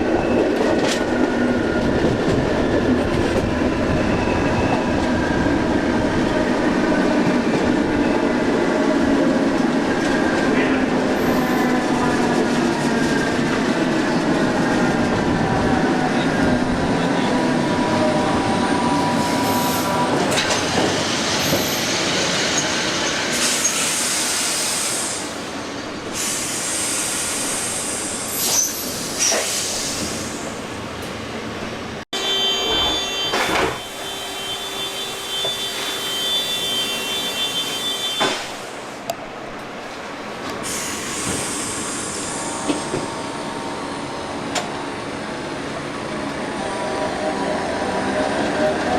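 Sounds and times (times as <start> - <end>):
train clunks: 19.9 - 24.0, 32.6 - 34.2, 35.2 - 43.3, 44.4 - 44.9
train hissing: 21.0 - 30.6, 32.5 - 39.1, 40.5 - 43.4.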